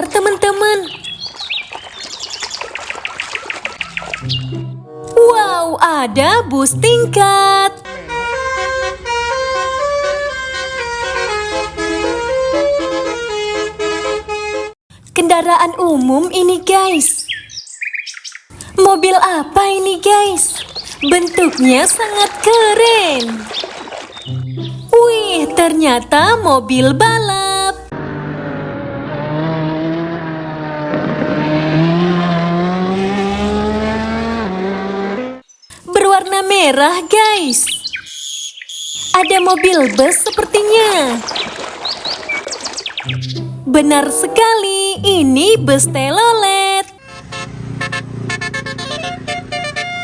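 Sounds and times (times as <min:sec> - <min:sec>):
multi-tone bus horn tune: 0:04.4 - 0:05.4, 0:06.1 - 0:14.8, 0:43.4 - 0:50.0
race car engine drone: 0:27.8 - 0:35.4.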